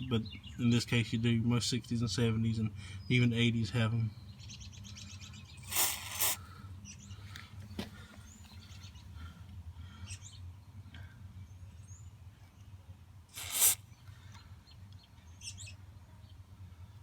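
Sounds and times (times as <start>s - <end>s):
birds chirping: 0.0s - 16.9s
steady low hum: 0.0s - 17.0s
loud hiss: 5.6s - 6.4s, 13.3s - 13.8s.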